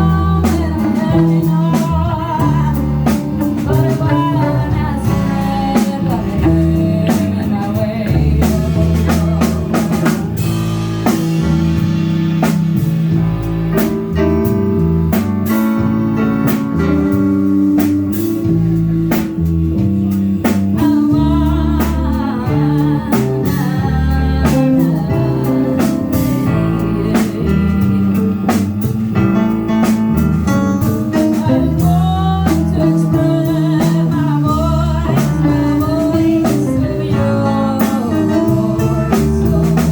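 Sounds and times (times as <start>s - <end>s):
person singing: 0.0s - 11.9s, 18.0s - 29.0s, 30.8s - 39.9s
drum kit beat: 0.0s - 39.9s
guitar: 0.0s - 39.9s
organ chords: 0.0s - 39.9s.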